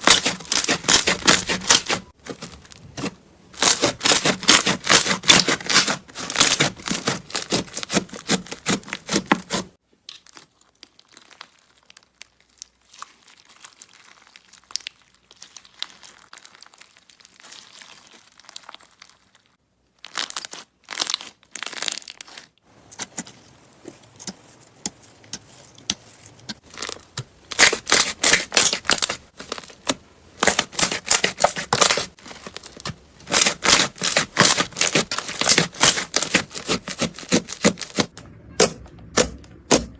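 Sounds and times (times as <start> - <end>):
slime squishing: 0.0 - 39.9.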